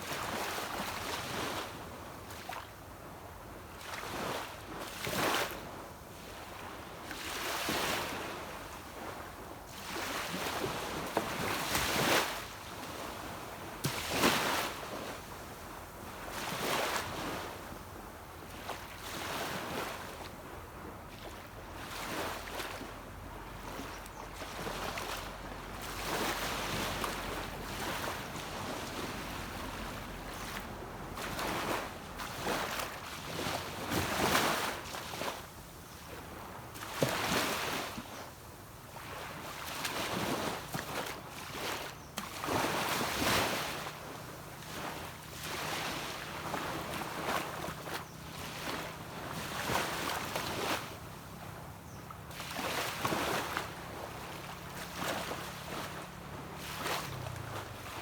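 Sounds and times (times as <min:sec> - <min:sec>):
small waves breaking on beach: 0:00.0 - 0:58.0
distant boat engine hum: 0:42.4 - 0:58.0.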